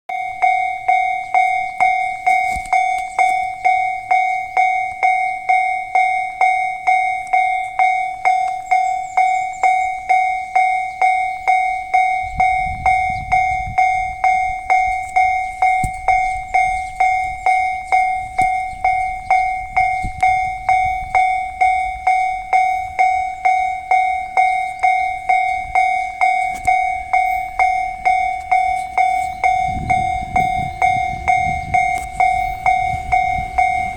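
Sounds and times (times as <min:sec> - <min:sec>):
level-crossing warning bell: 0:00.1 - 0:33.9
low rumble: 0:12.1 - 0:33.9.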